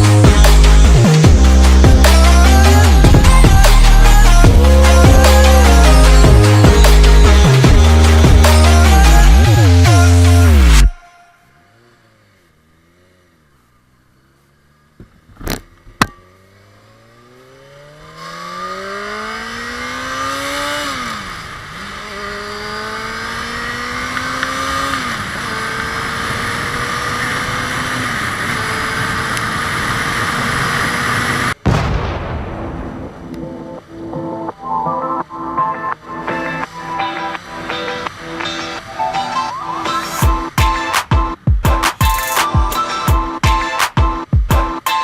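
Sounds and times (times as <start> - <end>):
motorcycle engine accelerating: 0.0 - 31.6.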